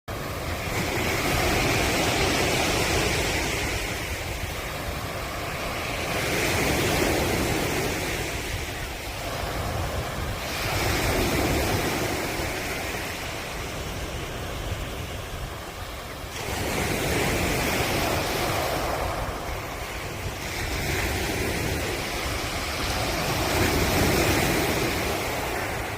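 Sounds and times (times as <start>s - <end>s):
ocean waves breaking on shore: 0.1s - 25.9s.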